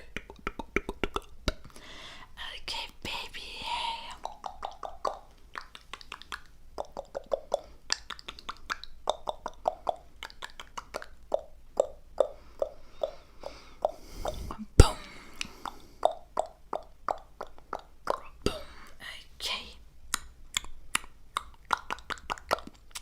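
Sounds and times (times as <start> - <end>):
close-miked pops and clicks: 0.0 - 1.8, 4.2 - 13.2, 20.1 - 23.0.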